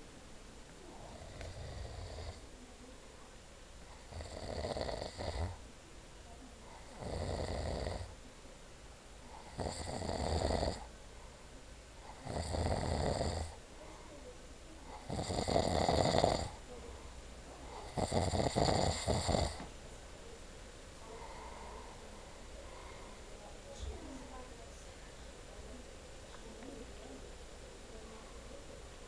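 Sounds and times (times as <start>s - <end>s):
person snoring: 4.1s - 5.6s, 6.9s - 8.1s, 9.4s - 10.9s, 12.2s - 13.6s, 15.0s - 16.6s, 17.8s - 19.7s.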